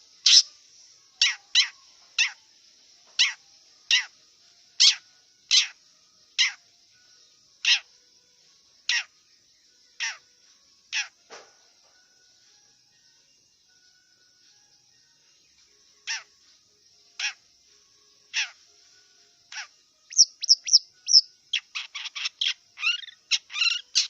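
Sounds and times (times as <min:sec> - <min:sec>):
steady high hiss: 0:00.0 - 0:09.9
bird harsh scolding calls: 0:00.3 - 0:00.5, 0:20.1 - 0:24.0.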